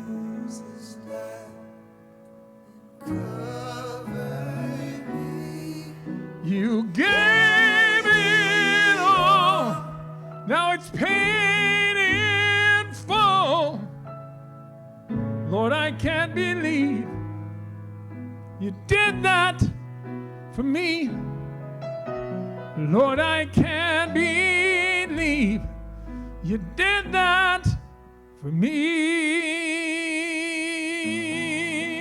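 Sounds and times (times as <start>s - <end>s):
worship band with keyboard and bass: 2.6s - 32.0s
solo voice singing with vibrato: 3.1s - 13.8s.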